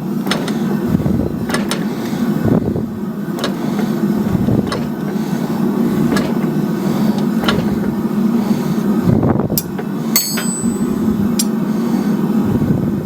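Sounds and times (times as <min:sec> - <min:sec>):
low mechanical drone: 0:00.0 - 0:13.0
forging tools clinking on steel: 0:09.6 - 0:11.6.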